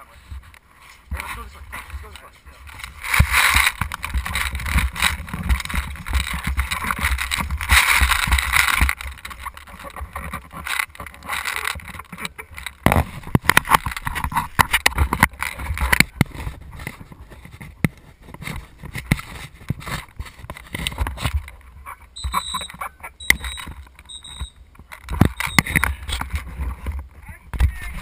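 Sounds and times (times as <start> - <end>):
camera handling noise: 2.7 - 17.0, 18.4 - 26.8
sharp clicks: 22.2 - 26.3.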